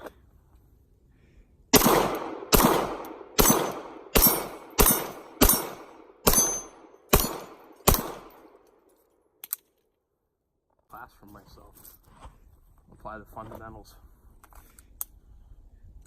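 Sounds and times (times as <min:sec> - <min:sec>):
pistol shots with echo: 0:01.7 - 0:08.6.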